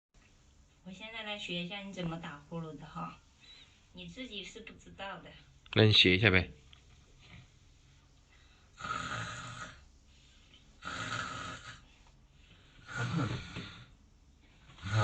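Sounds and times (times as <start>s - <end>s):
woman imitating snoring: 8.8s - 9.8s, 10.8s - 11.8s, 12.8s - 13.9s, 14.8s - 15.0s.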